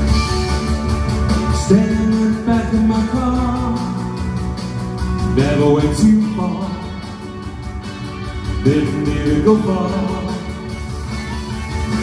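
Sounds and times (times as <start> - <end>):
guitar: 0.0 - 12.0
steady drum beat: 0.0 - 12.0
person singing long sliding notes: 8.5 - 10.8.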